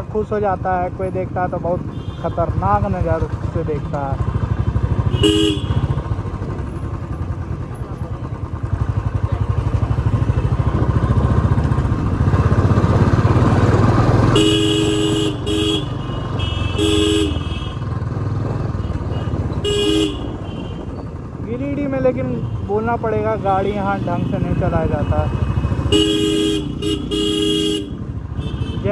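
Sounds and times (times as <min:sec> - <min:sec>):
motorcycle engine thumping: 0:01.9 - 0:21.3
two-tone vehicle horn honking: 0:05.0 - 0:06.0, 0:14.2 - 0:17.9, 0:18.8 - 0:20.9, 0:24.2 - 0:28.9.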